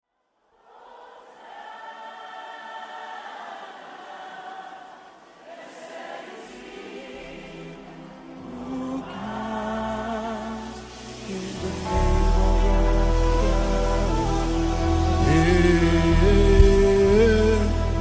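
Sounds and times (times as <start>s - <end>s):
wordless choir-like voices: 0.5s - 18.0s
low bass note: 11.6s - 18.0s.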